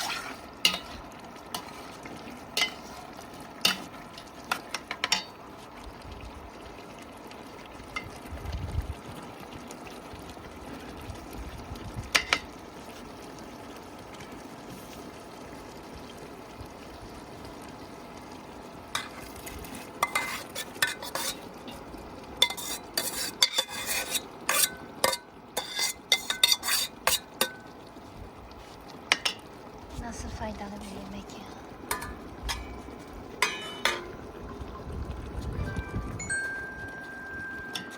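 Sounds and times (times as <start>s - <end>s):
utensil clinking and scraping pot: 0.0s - 5.4s, 12.1s - 12.5s, 18.9s - 27.8s, 29.1s - 29.5s, 31.8s - 34.9s, 37.0s - 37.9s
steady background hiss: 35.6s - 37.9s.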